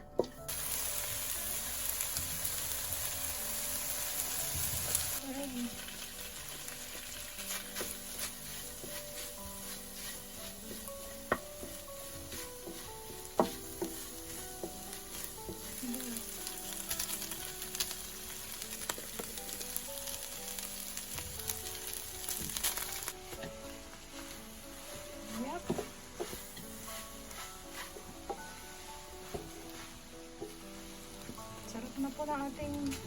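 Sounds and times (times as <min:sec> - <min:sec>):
rice sizzling in a hot pan: 0:00.4 - 0:33.0
utensil scraping a pan: 0:06.9 - 0:17.8, 0:24.2 - 0:32.2.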